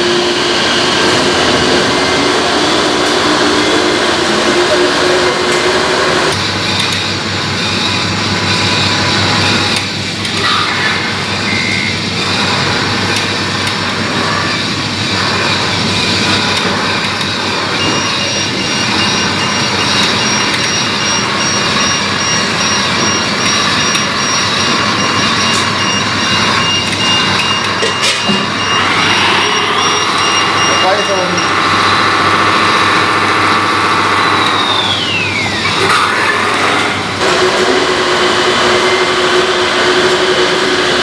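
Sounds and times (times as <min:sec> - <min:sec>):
simulated truck engine: 0:00.0 - 0:41.0
reversing beeper: 0:11.3 - 0:12.6, 0:15.2 - 0:41.0.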